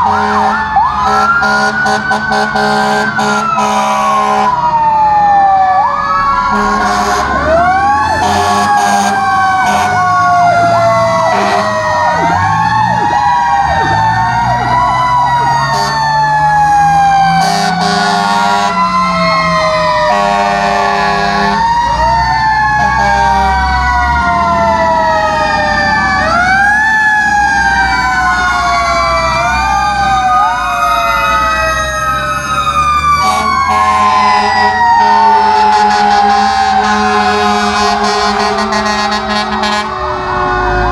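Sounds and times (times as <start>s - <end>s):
truck horn blasts: 0.0s - 4.6s, 6.5s - 7.5s, 8.2s - 10.1s, 11.3s - 11.8s, 15.7s - 16.0s, 17.4s - 18.8s, 20.1s - 21.6s, 22.8s - 23.5s, 33.2s - 40.0s
fire truck sirens wailing: 0.0s - 40.9s
truck engines rumbling: 0.0s - 40.9s.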